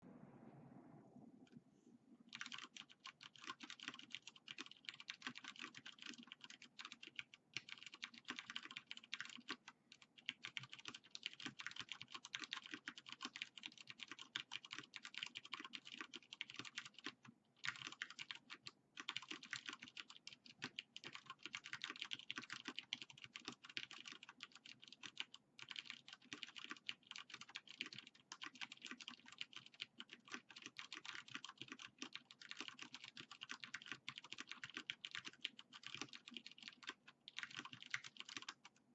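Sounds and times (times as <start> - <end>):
fast mechanical keyboard typing: 2.3 - 38.8.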